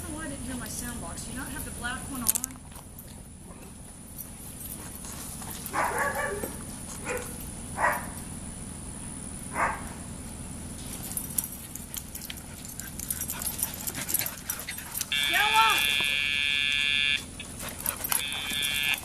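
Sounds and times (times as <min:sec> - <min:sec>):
dog barking: 0:05.7 - 0:08.2, 0:09.5 - 0:10.0, 0:18.1 - 0:19.0.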